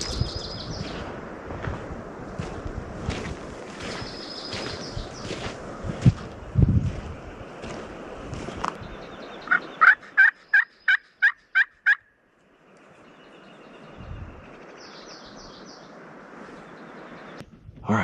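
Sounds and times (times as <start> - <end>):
steady outdoor hiss: 0.0 - 18.0
turkey yelps: 9.5 - 12.0.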